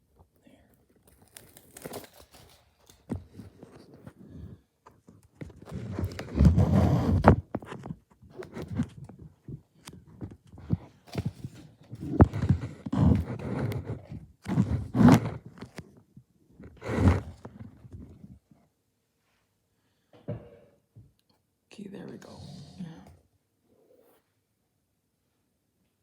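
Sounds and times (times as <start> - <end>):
thumps knocks and scrapes: 3.0 - 16.0.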